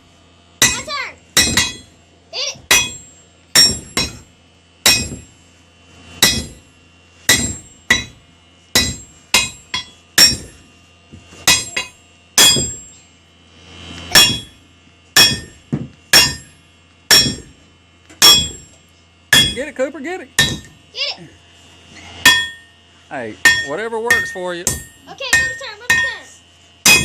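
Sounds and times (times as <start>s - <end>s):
hammer striking hot horseshoe: 0.6s - 2.0s, 2.6s - 5.4s, 6.1s - 10.7s, 11.3s - 13.0s, 14.1s - 19.8s, 20.4s - 20.9s, 22.2s - 22.8s, 23.4s - 27.0s.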